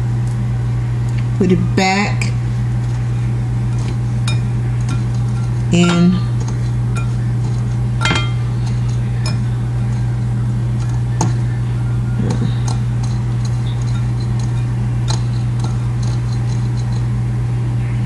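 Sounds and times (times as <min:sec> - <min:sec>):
steady low hum: 0:00.0 - 0:18.0
light clinks against bowl: 0:03.7 - 0:11.6, 0:12.2 - 0:17.2.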